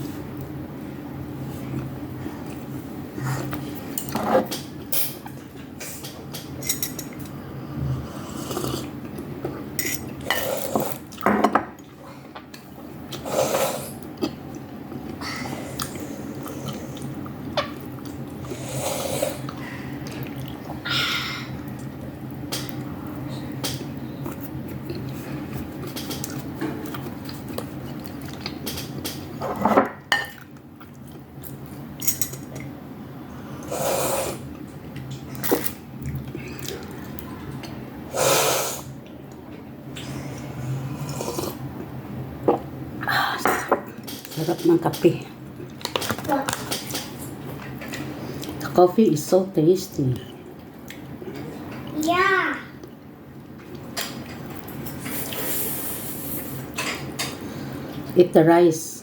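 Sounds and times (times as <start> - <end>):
chewing: 23.7 - 29.2.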